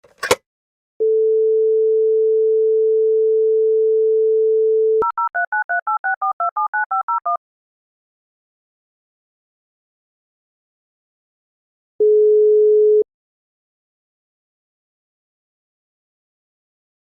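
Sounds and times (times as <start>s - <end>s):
telephone handset clatter: 0.0s - 0.4s
dial tone: 1.0s - 7.4s, 12.0s - 13.1s.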